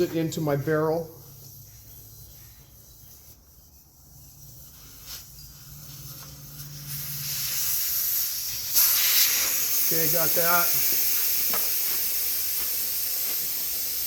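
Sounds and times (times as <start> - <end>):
air hissing from tire valve: 4.1 - 14.0.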